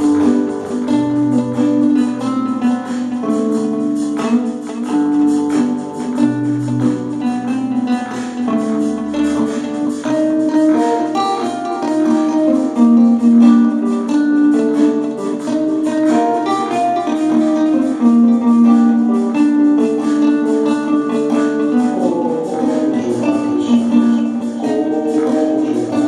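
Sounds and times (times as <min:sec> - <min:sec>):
acoustic guitar music: 0:00.0 - 0:26.0.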